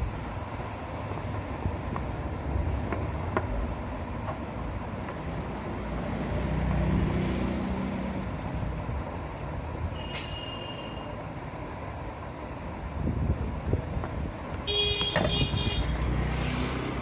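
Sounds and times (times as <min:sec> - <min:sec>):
road traffic rumble: 0:00.0 - 0:17.0
vehicle passing: 0:05.4 - 0:08.7, 0:15.7 - 0:17.0.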